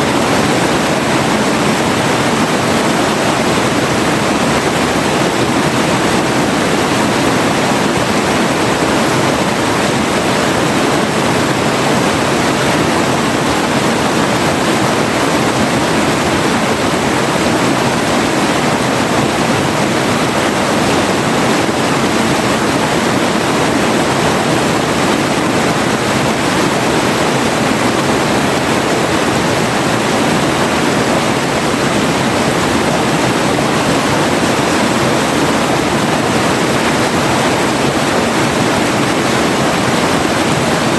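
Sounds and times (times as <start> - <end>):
river rushing over rocks: 0.0 - 40.9.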